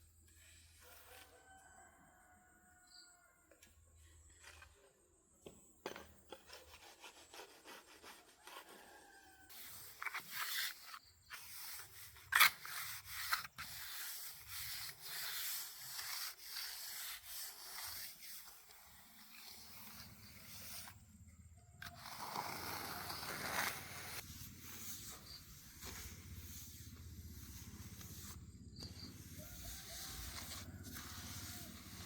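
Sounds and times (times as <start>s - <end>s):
wood being sanded by hand: 6.5s - 21.0s, 21.8s - 32.0s.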